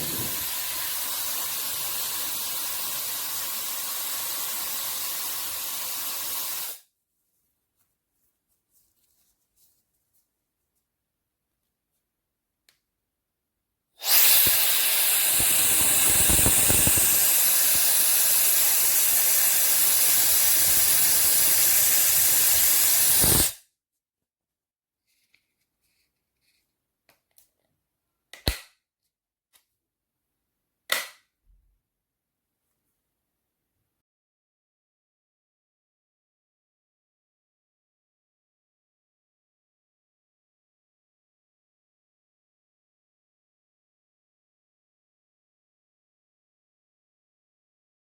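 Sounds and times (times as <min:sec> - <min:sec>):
hair dryer blowing: 0:00.0 - 0:06.8, 0:14.0 - 0:23.6.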